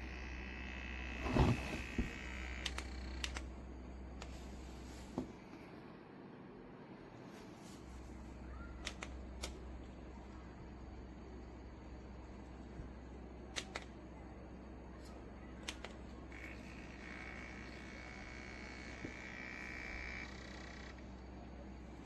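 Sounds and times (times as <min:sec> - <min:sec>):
fan motor humming: 0:00.0 - 0:05.3, 0:08.3 - 0:22.0
sharp clicks: 0:02.6 - 0:03.5.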